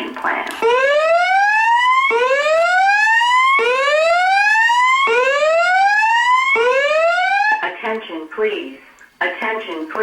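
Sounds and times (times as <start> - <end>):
fire alarm whoop signal: 0.6 - 7.6.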